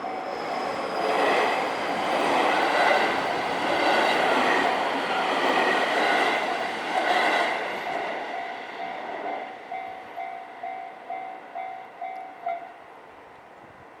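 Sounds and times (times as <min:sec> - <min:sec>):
train rumbling past: 0:00.0 - 0:14.0
level crossing warning bell: 0:09.7 - 0:12.7.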